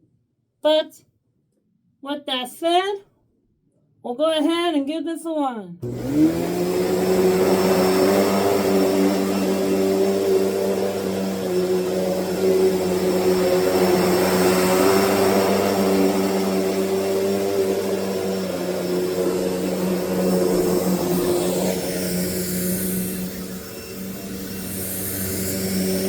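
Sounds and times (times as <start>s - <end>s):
vacuum cleaner motor humming: 5.8s - 26.0s.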